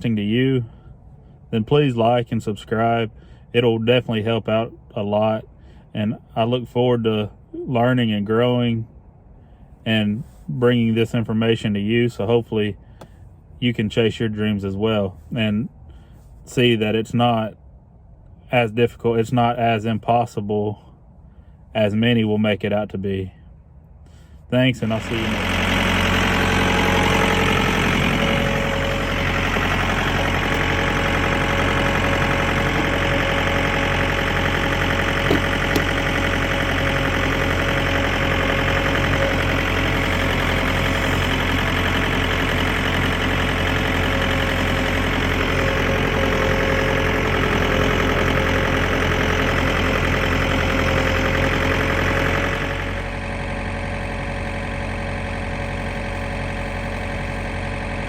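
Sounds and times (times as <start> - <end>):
engine idling: 24.0 - 58.0.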